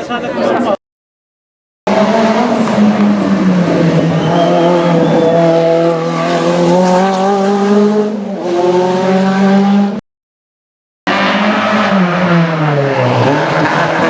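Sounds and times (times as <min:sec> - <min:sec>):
rally car engine revving: 0:01.9 - 0:10.0, 0:11.1 - 0:14.0.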